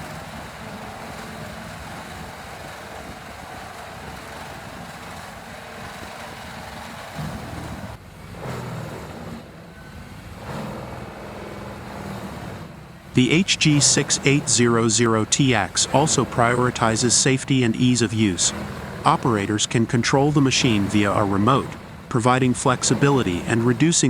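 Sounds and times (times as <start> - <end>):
wood grinder engine rumbling: 9.9 - 24.0.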